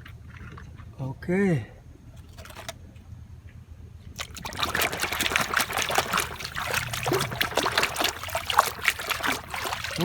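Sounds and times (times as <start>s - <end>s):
water splashing over plastic toys: 4.2s - 10.0s.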